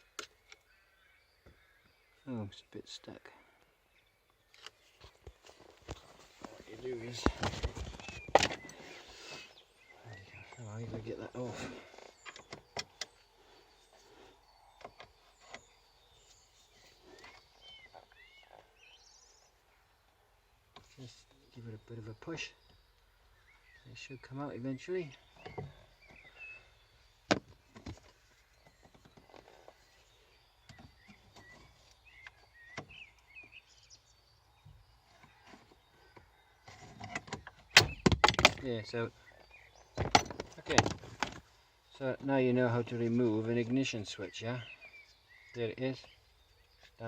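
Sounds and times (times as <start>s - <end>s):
birds chirping: 0.0s - 47.0s.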